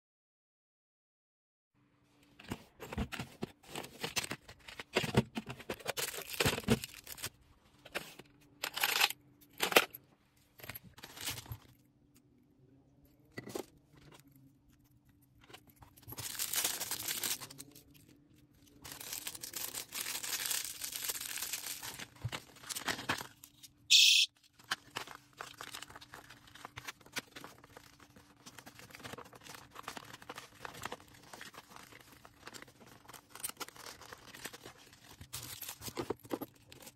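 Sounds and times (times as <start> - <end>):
packaging crinkling and tearing: 5.7 - 7.4, 16.0 - 23.8, 24.4 - 36.9
sharp high-pitched burst: 23.9 - 24.3.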